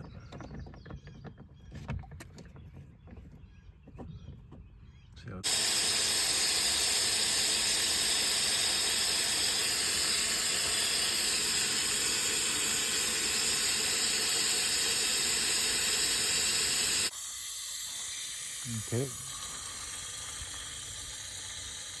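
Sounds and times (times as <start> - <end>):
water hissing through float valve: 5.4 - 22.0.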